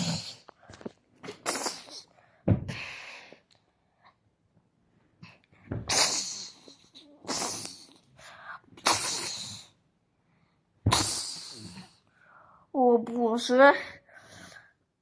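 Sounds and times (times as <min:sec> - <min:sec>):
loud sneezes: 0:05.9 - 0:07.9, 0:08.8 - 0:09.7, 0:10.9 - 0:11.9.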